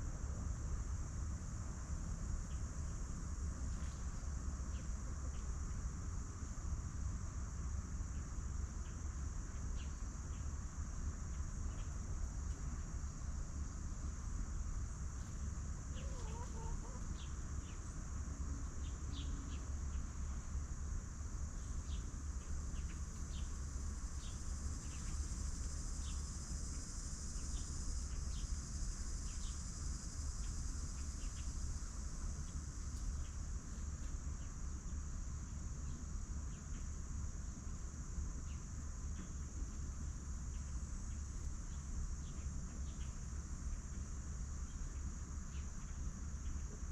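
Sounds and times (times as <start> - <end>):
high insect drone: 0.0 - 46.9
chickens clucking: 15.9 - 17.2.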